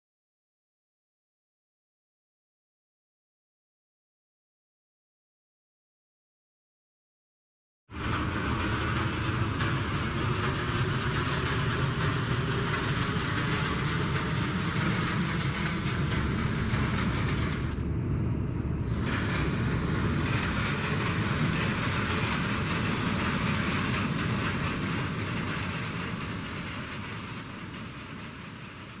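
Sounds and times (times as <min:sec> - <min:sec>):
steady rumbling: 0:07.9 - 0:29.0.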